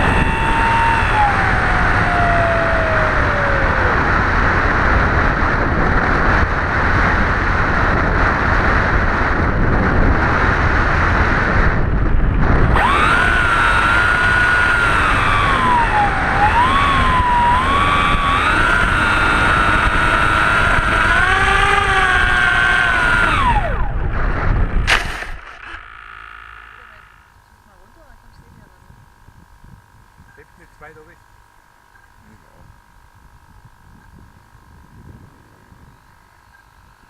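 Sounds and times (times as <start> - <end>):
electric motor and propeller whine: 0.0 - 37.0.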